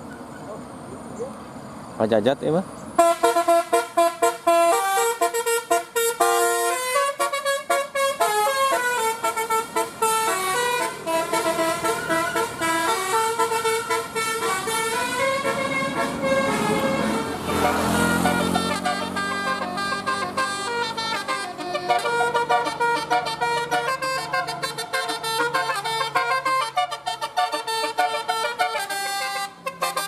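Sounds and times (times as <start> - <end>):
musical vehicle horn: 3.0 - 30.0.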